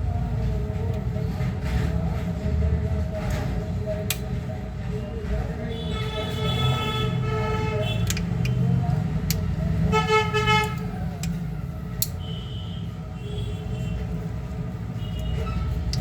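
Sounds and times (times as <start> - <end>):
road traffic rumbling: 0.0 - 16.0
vehicle horn tooting: 5.7 - 8.1, 9.9 - 10.8.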